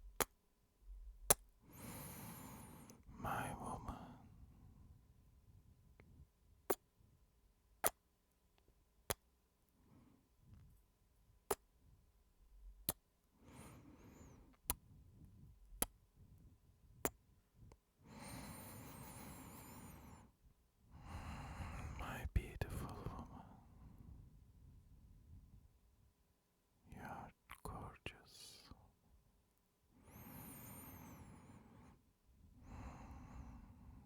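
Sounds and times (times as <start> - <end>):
soft breaths: 1.6 - 6.4, 13.4 - 25.7, 29.9 - 34.0.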